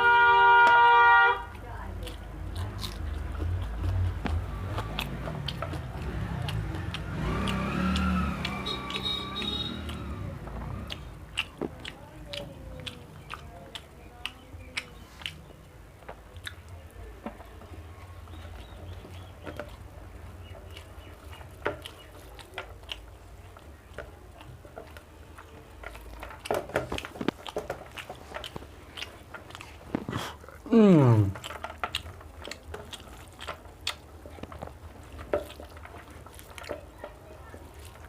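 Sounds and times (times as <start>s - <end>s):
person chewing food: 0.1s - 38.0s
wet mouth clicks and smacks: 2.0s - 10.0s, 10.8s - 15.6s.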